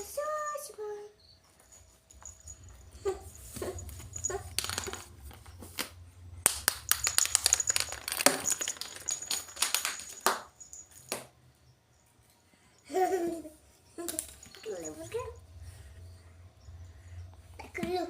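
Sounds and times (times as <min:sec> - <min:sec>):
low rumble: 0:02.1 - 0:09.5
cat clicking and scrabbling: 0:03.5 - 0:11.1.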